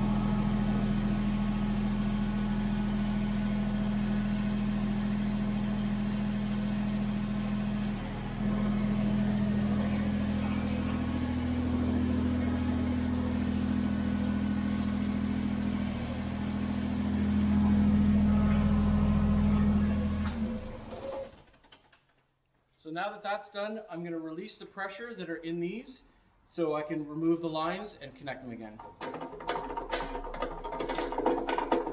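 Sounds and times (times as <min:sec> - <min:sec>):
tractor diesel engine running: 0:00.0 - 0:21.4.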